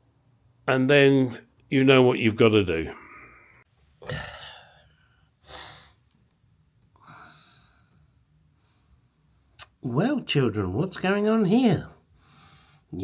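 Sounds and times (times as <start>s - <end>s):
man sighing: 2.9s - 4.9s.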